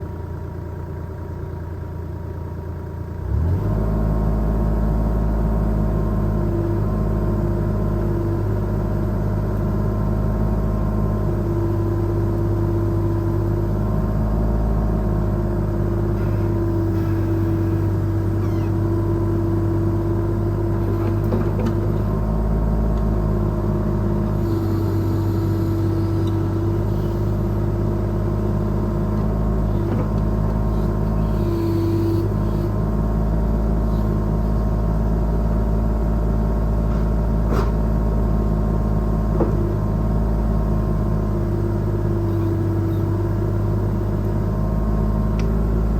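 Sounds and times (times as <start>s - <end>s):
excavator diesel engine revving: 3.1s - 45.9s
hydraulic whining tones: 16.1s - 19.7s, 24.3s - 28.2s, 29.6s - 32.9s.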